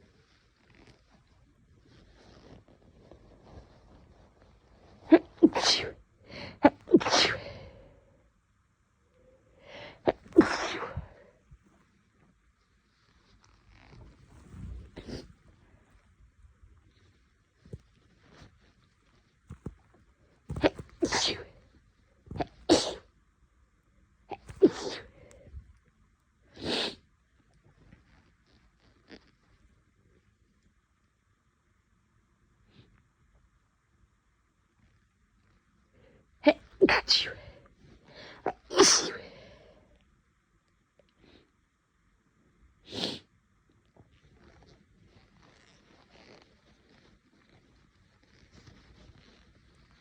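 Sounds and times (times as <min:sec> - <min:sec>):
woman sneezing: 0:05.1 - 0:07.6, 0:10.0 - 0:11.1, 0:20.5 - 0:21.5, 0:22.3 - 0:23.0, 0:24.3 - 0:25.1, 0:38.4 - 0:39.4.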